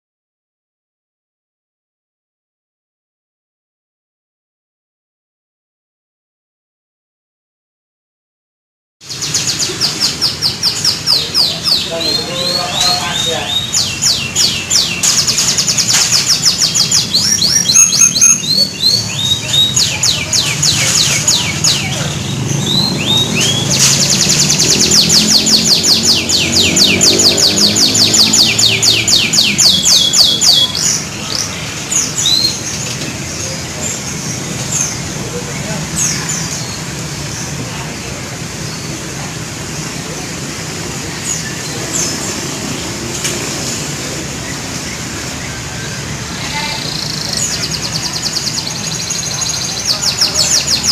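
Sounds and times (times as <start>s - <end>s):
canary singing trills: 9.0s - 37.6s, 44.3s - 50.9s
canary whistled phrases: 17.2s - 22.0s.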